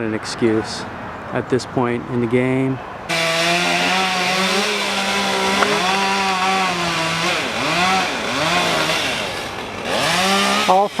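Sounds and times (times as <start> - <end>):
chainsaw running: 3.1 - 11.0.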